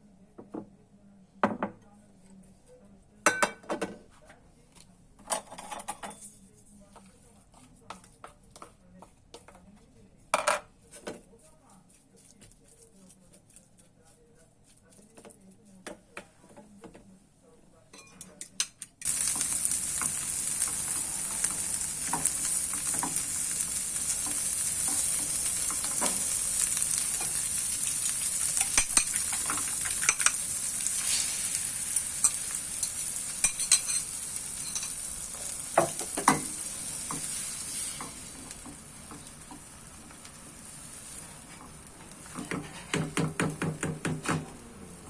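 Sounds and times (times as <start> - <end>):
food sizzling in a pan: 19.0 - 45.0.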